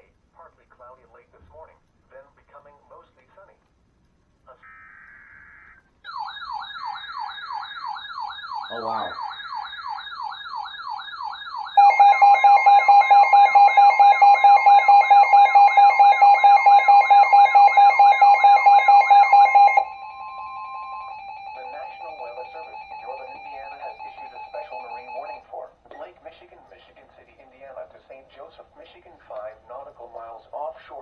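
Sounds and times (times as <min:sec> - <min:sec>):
warbling alert siren: 0:06.1 - 0:25.5
two-tone attention signal: 0:11.8 - 0:25.4.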